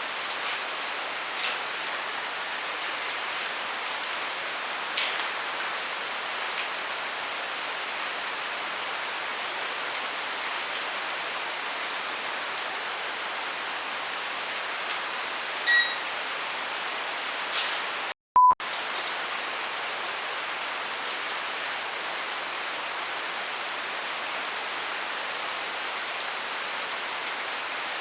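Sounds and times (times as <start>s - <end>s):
short electronic beep: 15.7s - 16.0s, 18.4s - 18.6s.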